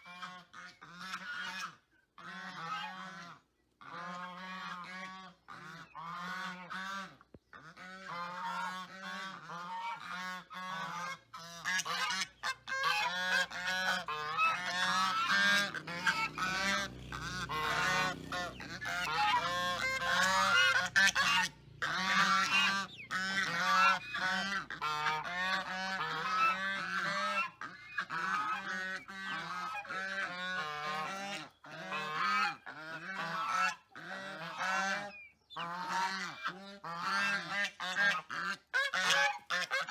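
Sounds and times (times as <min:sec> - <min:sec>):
farm animals calling: 0:00.0 - 0:39.9.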